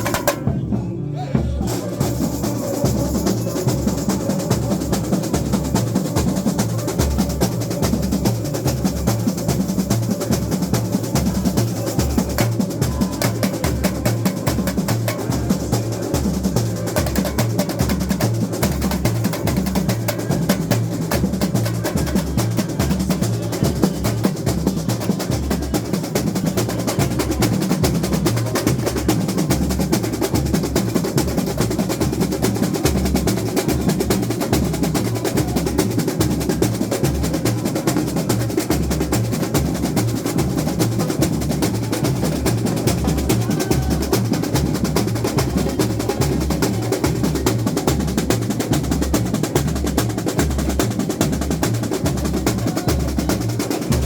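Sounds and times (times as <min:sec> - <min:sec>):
bass drums pounding: 0:38.8 - 0:54.0.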